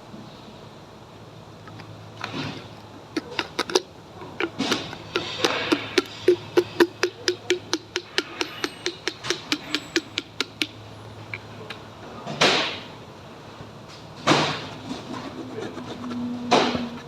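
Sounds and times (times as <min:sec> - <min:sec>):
rapid mechanical clicking: 0:01.7 - 0:11.5.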